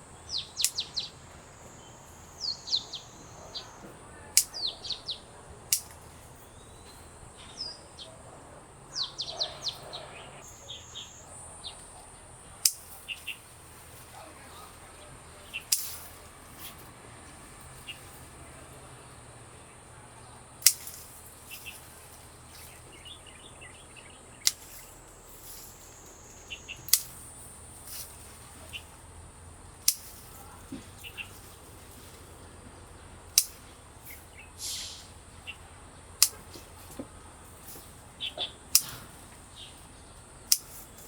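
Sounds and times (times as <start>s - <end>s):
faint bird chirps: 0.0s - 12.3s, 33.5s - 36.9s
pruning shears snipping stems: 0.4s - 1.1s, 2.5s - 7.6s, 12.5s - 16.9s, 20.6s - 23.1s, 23.7s - 29.1s, 29.8s - 32.4s, 33.2s - 35.6s, 36.2s - 41.0s.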